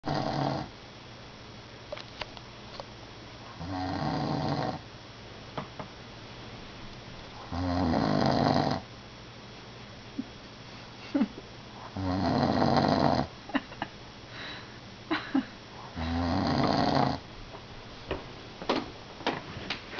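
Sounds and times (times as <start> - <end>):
person snoring: 0.0 - 0.7, 3.6 - 4.8, 7.4 - 8.9, 11.8 - 13.3, 15.8 - 17.2
quiet breathing: 14.2 - 14.9, 15.7 - 16.7.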